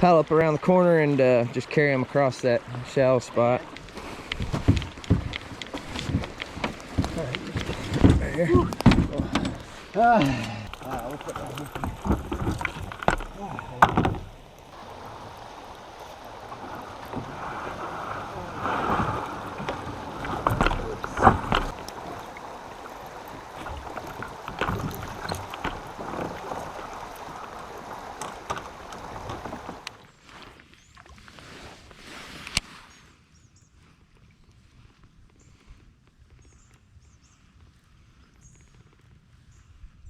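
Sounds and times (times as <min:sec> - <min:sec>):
water splashing: 0:00.0 - 0:32.8
paddle knocking on hull: 0:03.4 - 0:29.9.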